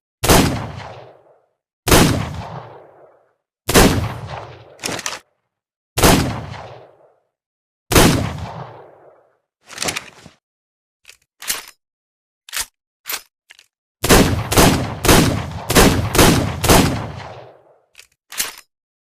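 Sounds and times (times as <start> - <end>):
revolver gunshots echoing: 0.2 - 4.8, 6.0 - 7.2, 7.9 - 9.3, 14.0 - 17.8.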